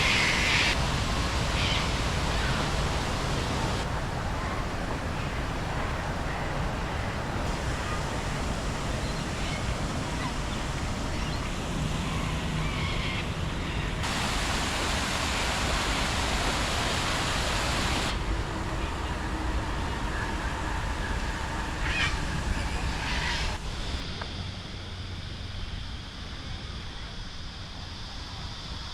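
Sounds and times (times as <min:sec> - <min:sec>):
rain hissing: 0:00.0 - 0:12.8, 0:13.9 - 0:24.0.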